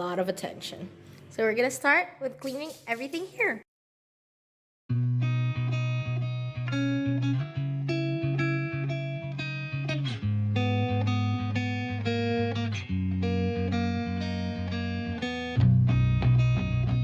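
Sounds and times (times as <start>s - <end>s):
bass line: 4.9s - 17.0s
plucked guitar: 4.9s - 17.0s.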